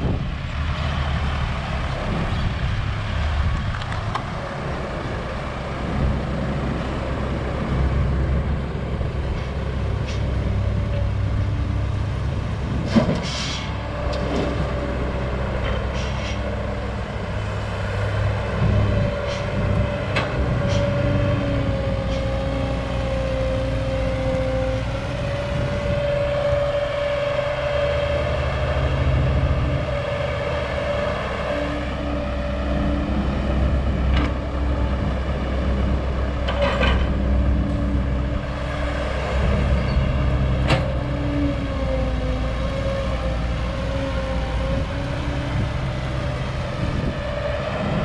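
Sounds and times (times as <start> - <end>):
excavator diesel engine running: 0.0 - 48.0.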